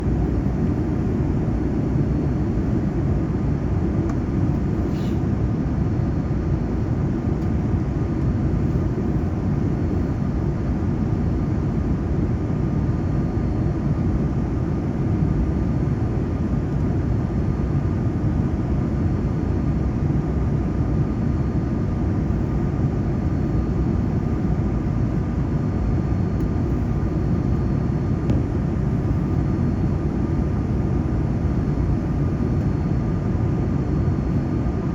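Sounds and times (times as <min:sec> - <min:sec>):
airplane cabin drone: 0:00.0 - 0:34.9
faint thin whine: 0:04.2 - 0:07.6.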